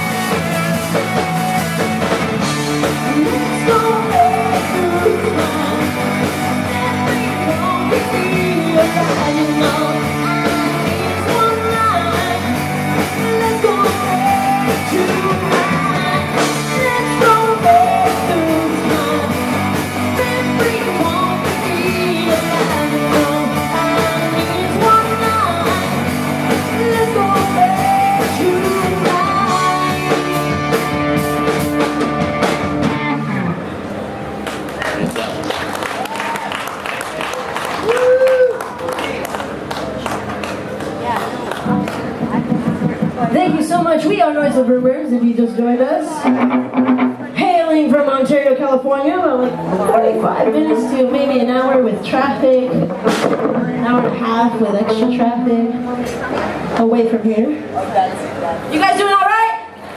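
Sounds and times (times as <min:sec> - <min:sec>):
drum kit: 0:00.0 - 0:33.6, 0:41.6 - 0:44.2, 0:46.2 - 0:48.0, 0:50.3 - 0:55.5
electric guitar: 0:00.0 - 0:36.6, 0:40.0 - 0:57.8
person singing: 0:02.8 - 0:30.7.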